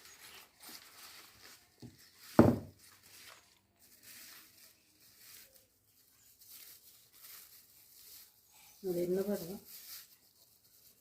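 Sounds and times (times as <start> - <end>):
faint rustling of packaging: 0.0 - 11.0
dull thump of packaging: 1.8 - 2.8.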